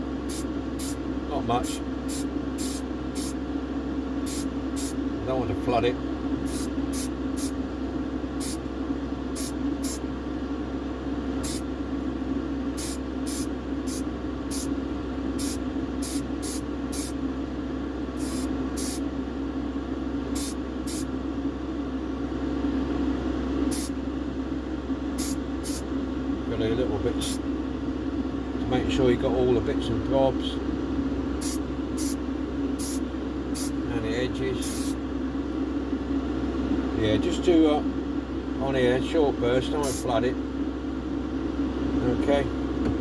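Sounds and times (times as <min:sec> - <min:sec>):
steady hum: 0:00.0 - 0:43.0
aerosol spray hissing: 0:00.3 - 0:01.0, 0:01.7 - 0:03.4, 0:04.3 - 0:05.0, 0:06.4 - 0:07.6, 0:08.4 - 0:08.6, 0:09.4 - 0:10.0, 0:11.4 - 0:11.6, 0:12.8 - 0:14.7, 0:15.4 - 0:17.2, 0:18.2 - 0:19.0, 0:20.4 - 0:21.1, 0:23.7 - 0:24.0, 0:25.2 - 0:25.8, 0:31.4 - 0:32.2, 0:32.8 - 0:33.0, 0:33.6 - 0:33.8, 0:34.6 - 0:35.0.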